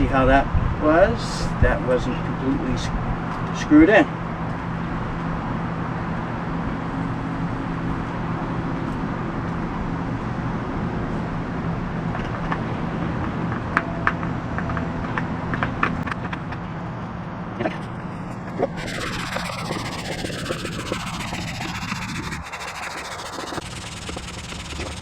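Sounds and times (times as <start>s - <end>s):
electric air pump humming: 17.8s - 25.0s.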